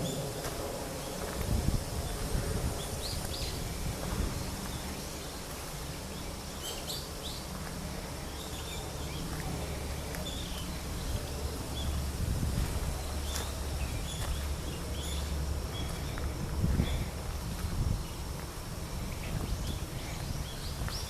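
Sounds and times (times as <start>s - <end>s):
birds chirping: 0.0s - 21.0s
steady low rumble: 0.0s - 21.0s.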